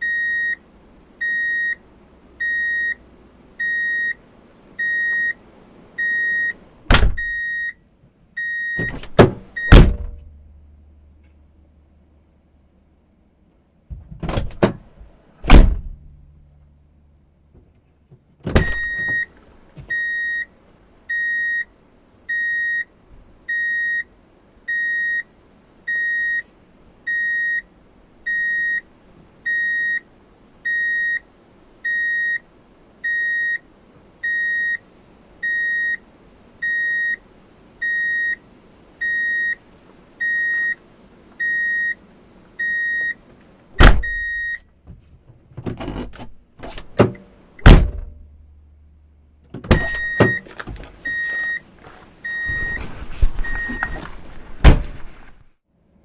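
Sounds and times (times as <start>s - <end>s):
reverse warning beeper: 4.8s - 5.4s, 6.0s - 6.6s, 37.8s - 38.4s, 39.0s - 39.6s, 40.2s - 40.8s, 44.0s - 44.6s, 49.8s - 50.4s, 51.0s - 51.6s, 52.3s - 53.9s
loud thump and knocks: 6.9s - 7.3s, 8.8s - 10.3s, 15.4s - 16.2s, 43.8s - 44.2s, 45.6s - 48.2s, 52.5s - 55.3s
clunk: 8.8s - 10.4s, 17.6s - 20.0s, 44.9s - 48.4s, 49.5s - 51.5s.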